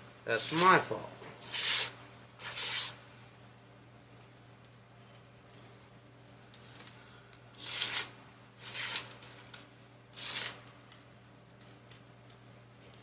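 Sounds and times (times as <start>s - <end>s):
knife slicing through paper: 7.6s - 9.1s, 10.2s - 10.6s.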